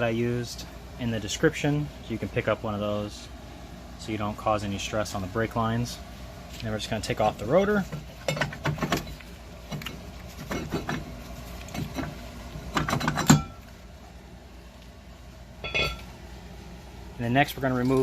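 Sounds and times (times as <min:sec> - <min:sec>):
metal clinks and scrapes: 0:15.6 - 0:16.1.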